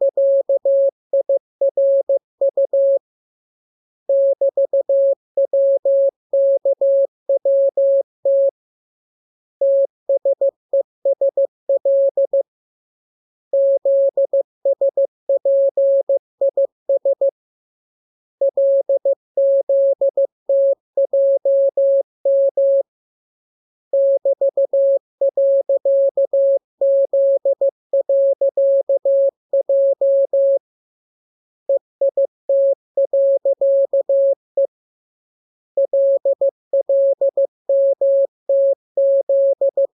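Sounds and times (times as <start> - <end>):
morse code beeps: 0.1 - 3.0, 4.1 - 8.5, 13.6 - 17.3, 18.5 - 22.8, 24.0 - 30.6, 31.7 - 34.7, 35.8 - 39.9.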